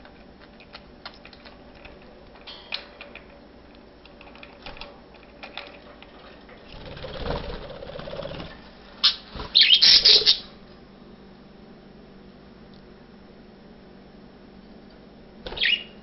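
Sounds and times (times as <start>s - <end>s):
budgies wing flapping: 6.9s - 10.4s, 15.5s - 15.8s
budgies chirping: 9.0s - 10.5s, 15.6s - 16.0s.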